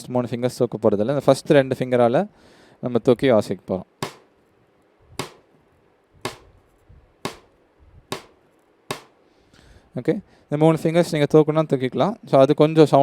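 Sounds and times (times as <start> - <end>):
rim clicks on snare drum: 4.0 - 4.4, 5.2 - 5.5, 6.3 - 6.5, 7.3 - 7.5, 8.1 - 9.2.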